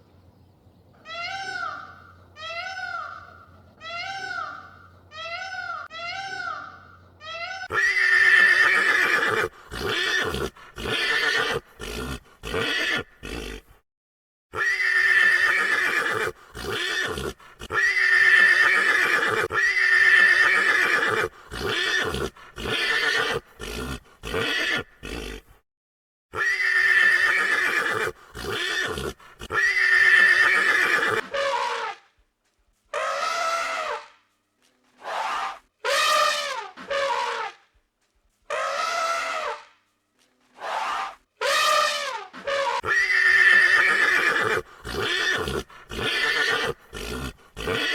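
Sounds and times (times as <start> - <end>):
animal calling: 1.0 - 13.8, 14.6 - 25.6, 26.4 - 31.9, 40.6 - 47.9.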